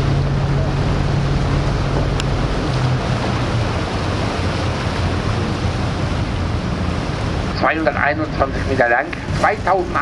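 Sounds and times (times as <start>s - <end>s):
wind noise on microphone: 0.0s - 7.7s
boat engine humming: 0.0s - 10.0s
water: 0.0s - 10.0s.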